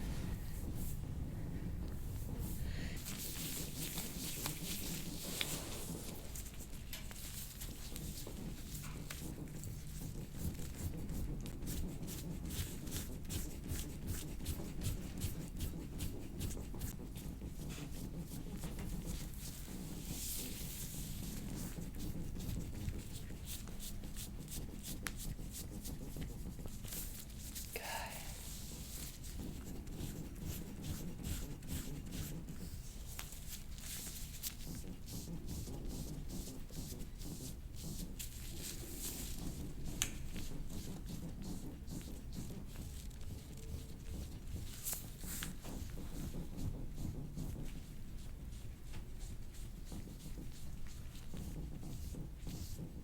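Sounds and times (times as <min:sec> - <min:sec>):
hands rubbing skin and cloth: 0:00.0 - 0:53.0.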